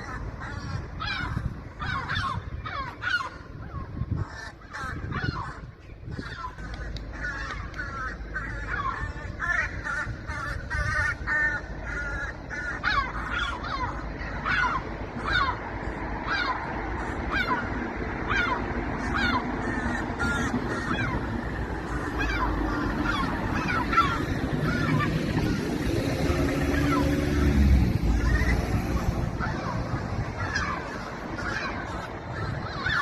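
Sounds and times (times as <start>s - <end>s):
gulls calling: 0.0s - 33.0s.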